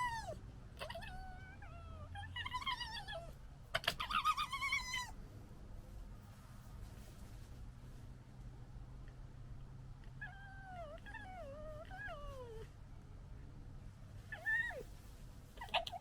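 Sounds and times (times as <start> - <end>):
fox whining: 0.0 - 5.2, 10.2 - 12.7, 14.3 - 14.9, 15.6 - 16.0.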